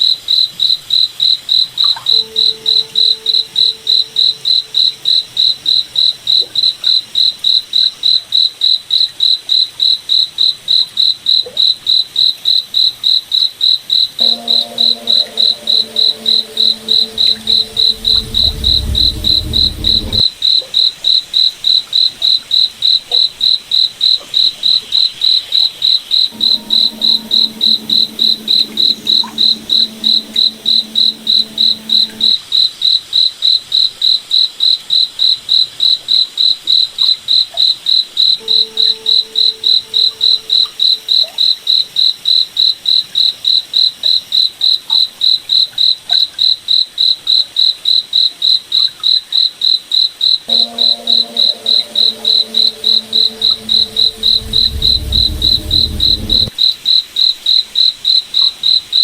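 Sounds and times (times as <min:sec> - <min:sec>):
low hum: 0:14.2 - 0:20.3, 0:26.3 - 0:32.4, 0:50.5 - 0:56.5
low rumble: 0:14.3 - 0:20.3, 0:26.3 - 0:32.3, 0:50.5 - 0:56.6.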